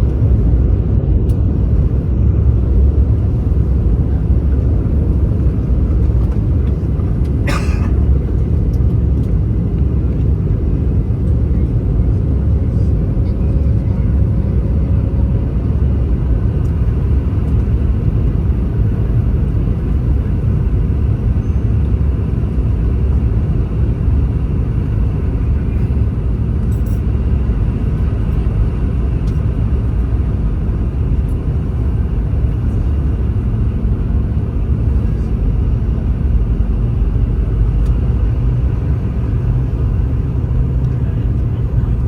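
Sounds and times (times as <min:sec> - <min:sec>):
jet engines humming: 0:00.0 - 0:42.0.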